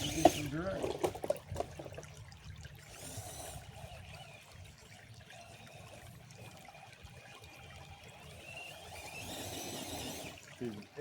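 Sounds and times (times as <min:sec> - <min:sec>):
water trickling faintly: 0:00.0 - 0:11.0.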